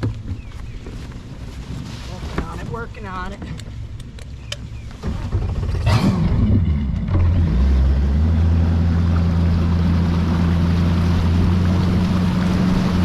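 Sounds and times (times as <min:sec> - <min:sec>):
outboard motor drone: 0:00.0 - 0:13.0
wind and water rushing: 0:00.0 - 0:13.0.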